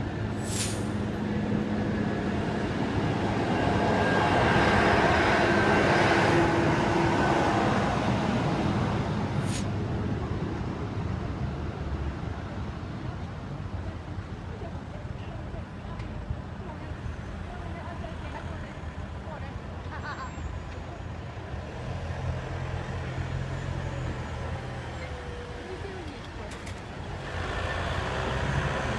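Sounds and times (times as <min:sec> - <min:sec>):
heavy vehicle passing: 0:21.7 - 0:28.9.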